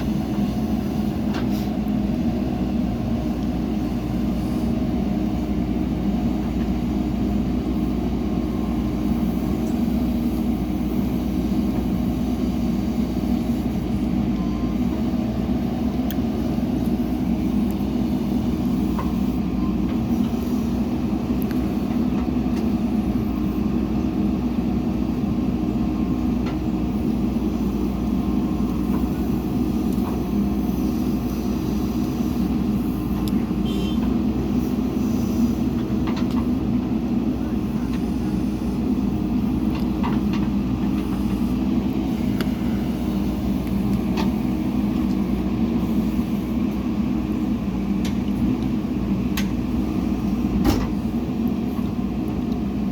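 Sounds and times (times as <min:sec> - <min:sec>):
diesel engine droning: 0:00.0 - 0:52.9.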